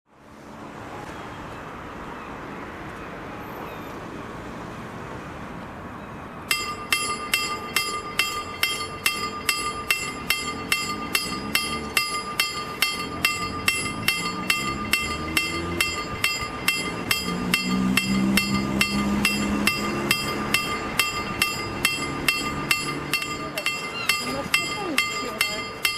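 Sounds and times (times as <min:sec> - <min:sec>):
street traffic noise: 0:00.1 - 0:25.9
level-crossing warning bell: 0:06.5 - 0:25.9
vehicle engine rising and falling: 0:10.1 - 0:23.2.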